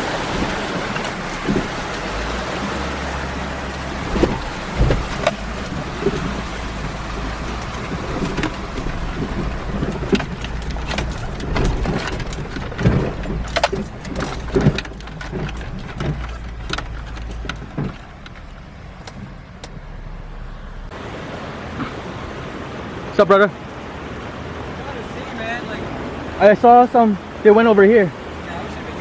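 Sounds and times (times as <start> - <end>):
heavy thumps: 0.0 - 20.9
knocks and rattles: 0.0 - 20.9
off-road vehicle engine rumble: 0.0 - 29.0.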